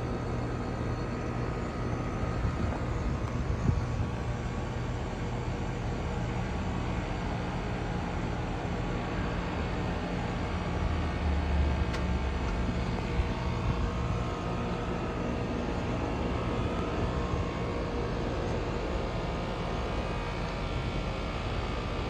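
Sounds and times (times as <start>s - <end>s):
heat pump hissing: 0.0s - 20.8s
low hum: 9.2s - 17.7s.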